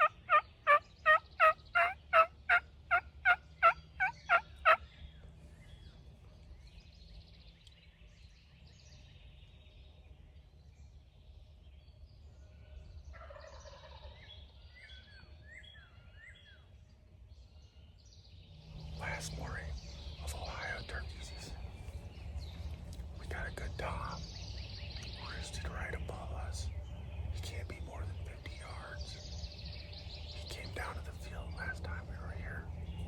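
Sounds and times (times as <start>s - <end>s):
wild turkey yelping: 0.0s - 4.8s, 13.1s - 14.2s
faint songbird chirps: 0.0s - 33.0s.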